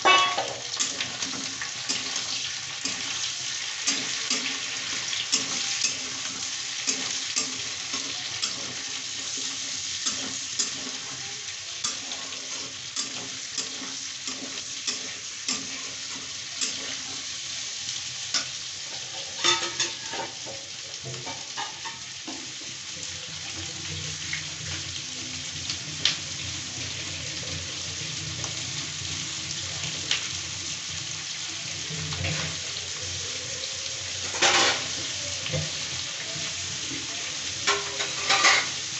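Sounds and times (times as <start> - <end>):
food sizzling in a pan: 0.0 - 38.9
utensil scraping a pan: 11.8 - 17.2, 37.7 - 38.8.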